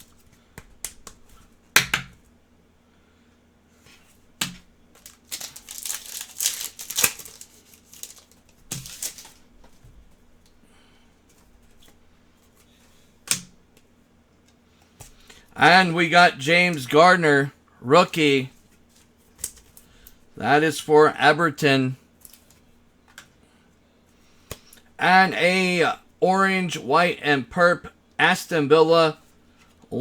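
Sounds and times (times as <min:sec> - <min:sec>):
trading cards snapping: 0:00.5 - 0:02.2, 0:04.4 - 0:09.4
cards sliding and rustling: 0:05.0 - 0:09.4.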